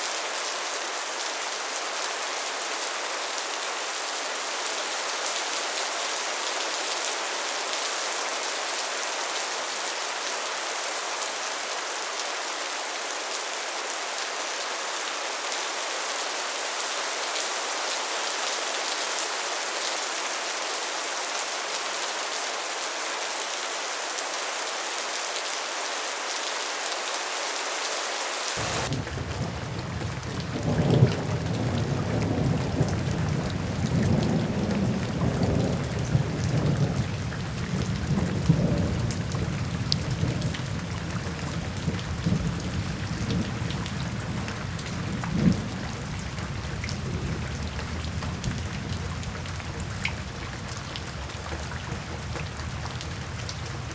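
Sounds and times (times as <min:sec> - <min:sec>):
rain hissing: 0:14.2 - 0:31.6
rolling thunder rumbles: 0:28.6 - 0:44.4.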